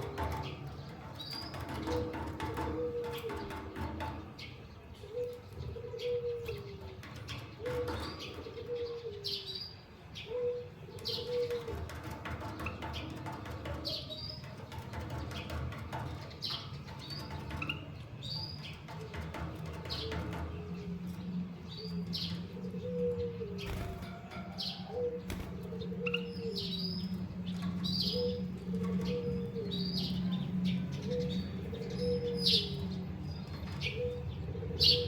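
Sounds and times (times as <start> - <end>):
dove cooing: 1.6 - 3.9, 5.0 - 9.6, 10.2 - 12.2, 19.8 - 32.8, 33.7 - 35.0
wing flutters: 23.6 - 24.4.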